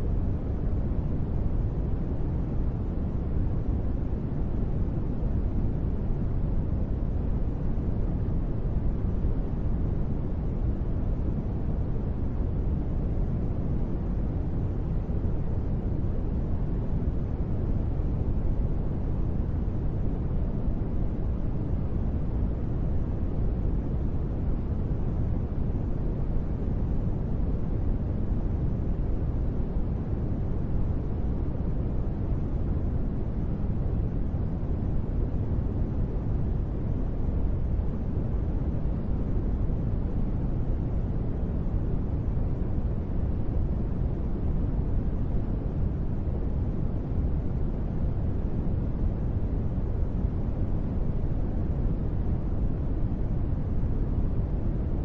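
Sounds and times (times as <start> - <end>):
muffled rain hiss: 0.0 - 55.0.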